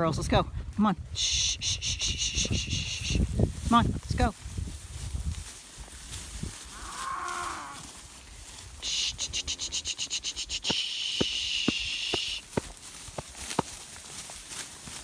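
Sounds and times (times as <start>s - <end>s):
insect trill: 1.3s - 3.2s, 8.8s - 12.5s
cow mooing: 6.7s - 7.8s.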